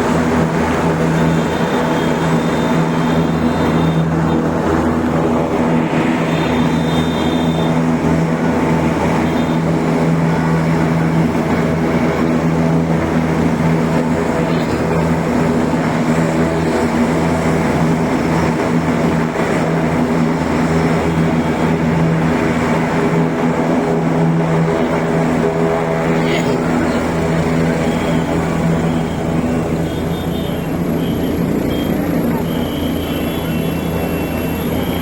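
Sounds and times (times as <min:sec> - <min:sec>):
helicopter drone: 0:00.0 - 0:35.0.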